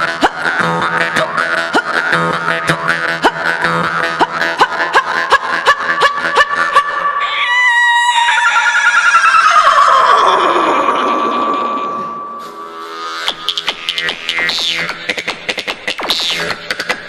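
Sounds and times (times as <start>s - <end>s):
wavering animal-like call: 3.0s - 12.5s
long falling cry: 4.0s - 12.6s
jaw harp plucked: 11.9s - 17.0s.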